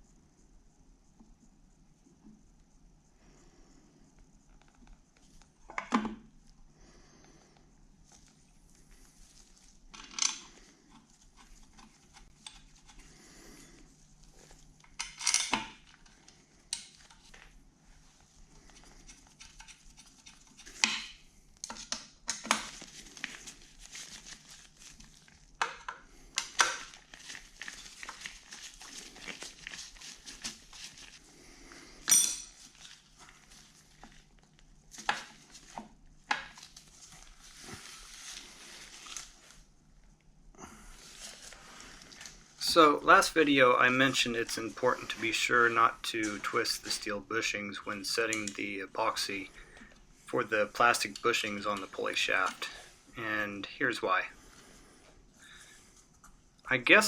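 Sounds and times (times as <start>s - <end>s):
metal tools clinking and knocking: 32.0s - 32.6s.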